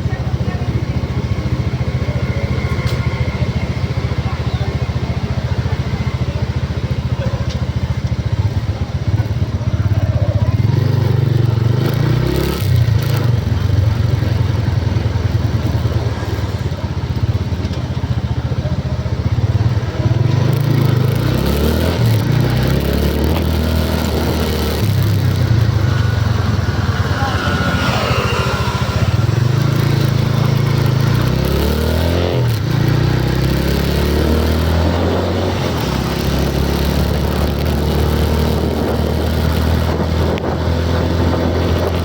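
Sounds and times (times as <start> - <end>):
vehicle engine running: 0.0 - 42.0.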